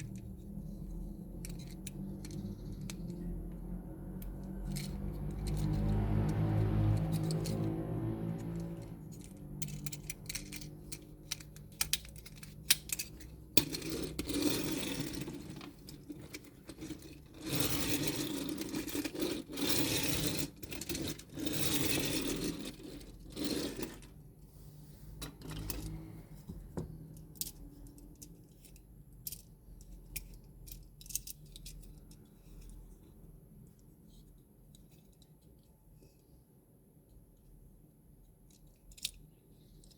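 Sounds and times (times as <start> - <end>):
small plastic parts clicking: 1.0 - 3.4, 8.6 - 20.0, 27.1 - 32.3.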